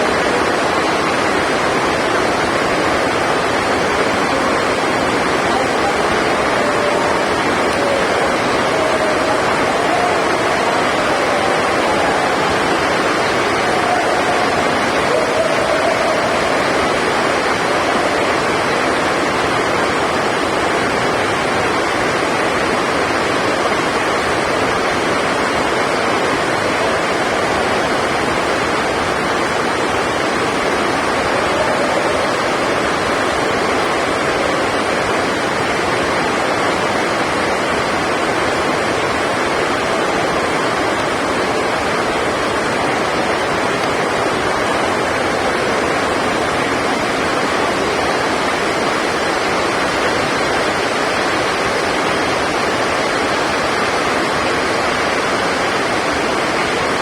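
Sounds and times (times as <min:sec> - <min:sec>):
heavy rain rushing: 0:00.0 - 0:57.0.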